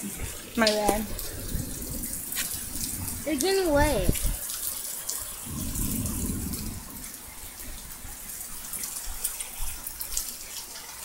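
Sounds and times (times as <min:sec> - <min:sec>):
heavy rain falling: 0:00.0 - 0:11.0
low rumble: 0:01.1 - 0:04.4, 0:05.5 - 0:08.2.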